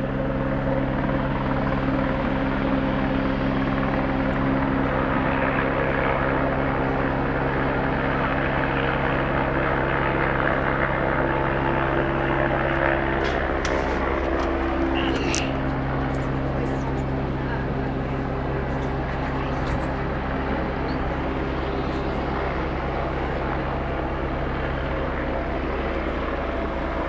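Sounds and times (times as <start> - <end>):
helicopter engine hum: 0.0 - 27.0
helicopter rotor beating: 11.5 - 27.0.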